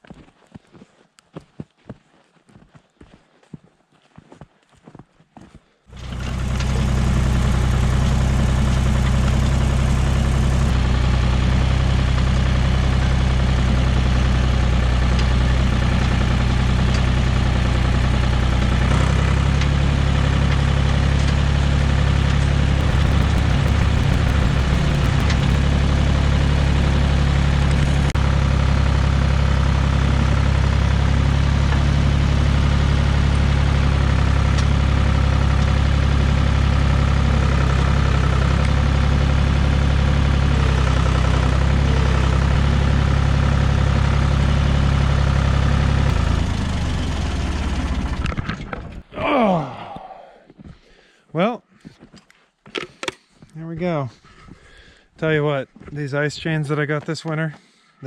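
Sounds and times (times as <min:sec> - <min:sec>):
tractor engine running: 0:05.9 - 0:49.1.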